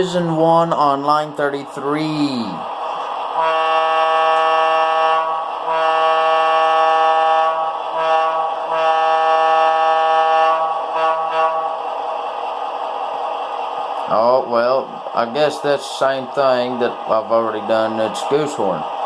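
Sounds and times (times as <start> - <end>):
locomotive air horn blasts: 3.4 - 11.8.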